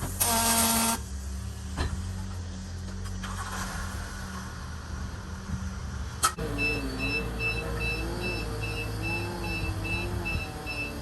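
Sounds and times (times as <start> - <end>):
rapid high electronic beeps: 6.6 - 11.0.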